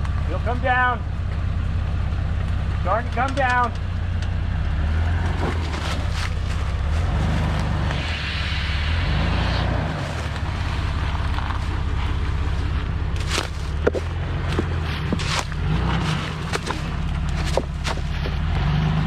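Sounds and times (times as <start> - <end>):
vehicle engine running at low revs: 0.0 - 19.0
hiss: 7.9 - 9.8.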